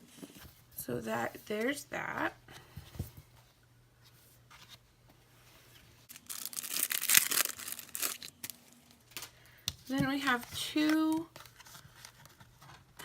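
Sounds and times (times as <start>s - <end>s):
packaging rustling and crackling: 6.0s - 13.0s.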